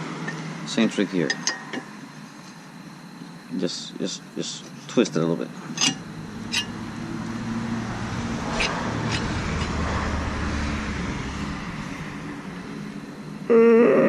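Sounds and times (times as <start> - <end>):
vehicle passing: 6.0 - 13.5.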